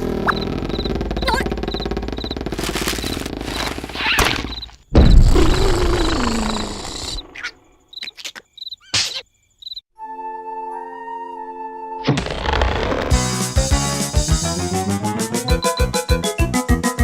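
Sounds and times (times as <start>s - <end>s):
cricket chirps: 0.3s - 9.9s
cartoon impact: 3.9s - 6.8s.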